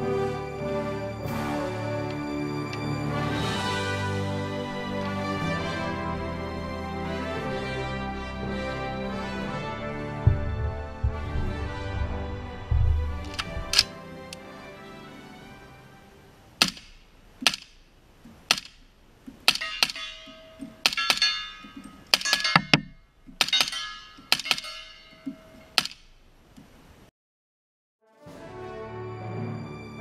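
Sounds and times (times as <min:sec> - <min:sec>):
suppressed rifle shots: 0:16.6 - 0:17.8
metallic ringing: 0:19.5 - 0:25.8.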